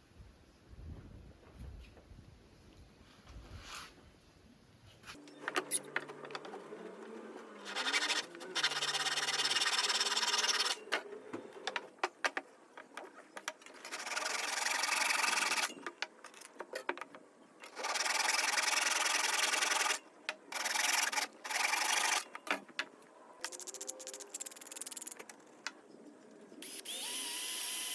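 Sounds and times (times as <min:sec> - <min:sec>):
wood sanding: 0:05.7 - 0:10.9
sharp clicks and knocks: 0:09.7 - 0:18.3.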